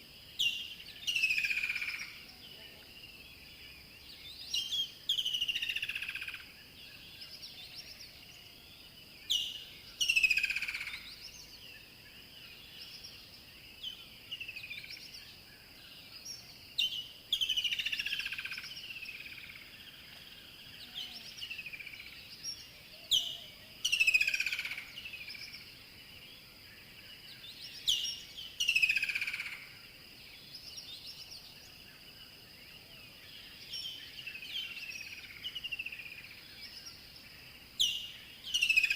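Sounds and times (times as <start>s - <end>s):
bird song with downward chirps: 0.4s - 2.5s, 3.2s - 8.5s, 9.2s - 25.7s, 27.2s - 29.6s, 37.8s - 38.9s.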